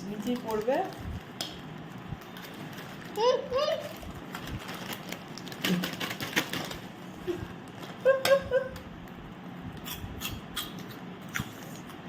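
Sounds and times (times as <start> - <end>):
crisp packet crackling: 0.0 - 8.0.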